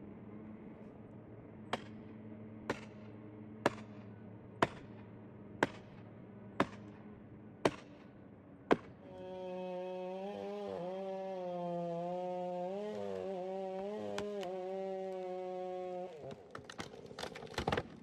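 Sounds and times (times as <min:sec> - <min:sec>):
chainsaw engine starting: 0:09.0 - 0:18.0.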